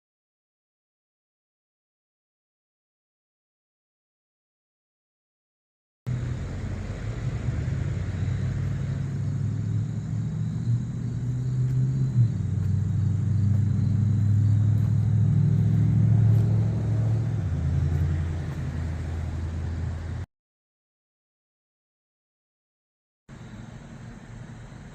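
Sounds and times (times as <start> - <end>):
vehicle engine rumbling: 6.1 - 20.3, 23.3 - 24.9.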